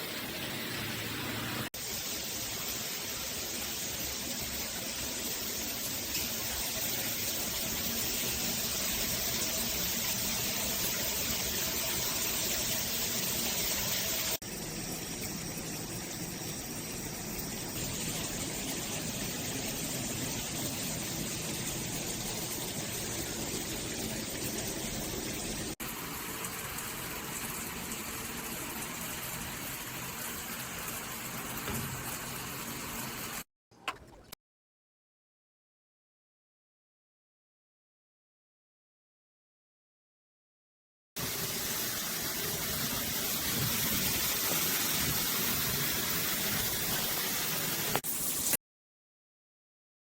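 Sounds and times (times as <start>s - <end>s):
water spraying from shower head: 41.2s - 48.6s.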